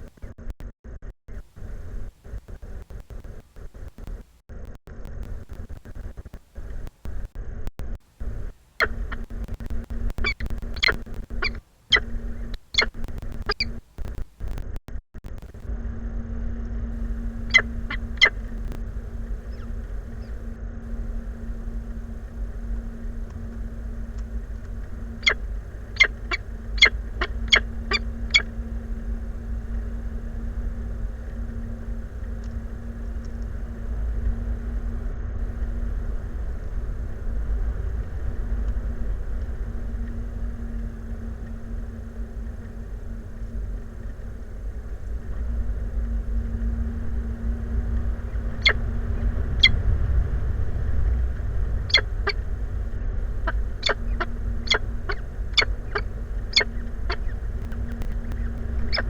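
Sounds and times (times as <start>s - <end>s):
faint steady hum: 0.0s - 59.0s
wind rumbling on microphone: 8.1s - 14.7s, 15.3s - 59.0s
bird call notes: 8.8s - 9.3s, 10.2s - 13.8s, 17.0s - 34.4s, 38.4s - 49.8s, 51.8s - 52.6s, 53.2s - 59.0s.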